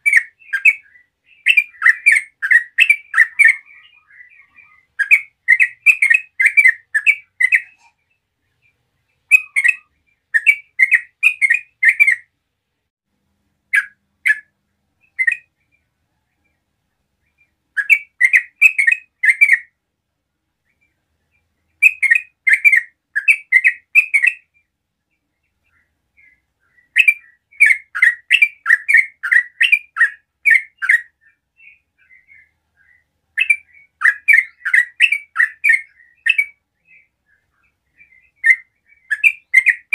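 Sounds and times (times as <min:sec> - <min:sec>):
bird calling sharp notes: 0:00.0 - 0:08.0, 0:09.3 - 0:12.3, 0:17.8 - 0:19.7, 0:21.8 - 0:24.5, 0:25.7 - 0:39.9.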